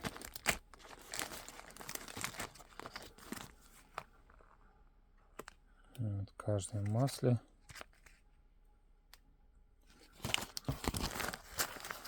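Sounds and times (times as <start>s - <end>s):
crinkling and rustling: 0.0s - 5.6s, 6.6s - 8.4s, 9.8s - 12.0s.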